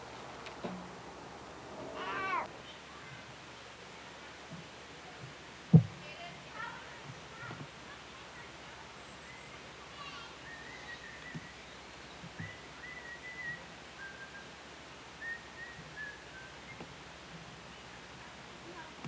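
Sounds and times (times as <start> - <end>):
soft low thumps: 5.7 - 6.0
faint whistling: 10.2 - 14.6, 15.2 - 16.9.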